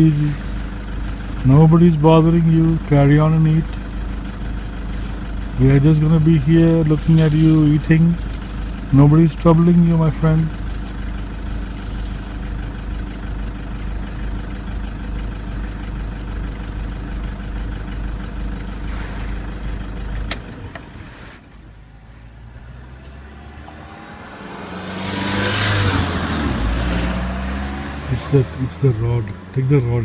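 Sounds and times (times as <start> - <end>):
engine revving: 0.0 - 13.0, 16.5 - 30.0
vehicle engine idling: 0.0 - 30.0
engine switch click: 3.6 - 21.0.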